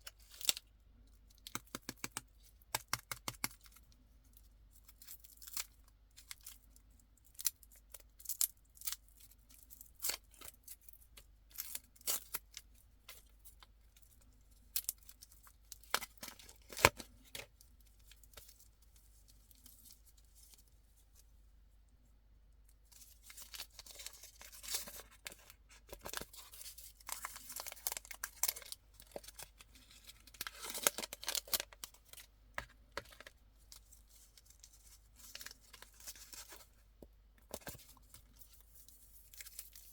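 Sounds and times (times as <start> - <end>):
candy wrapper crinkling and tearing: 23.0 - 32.3.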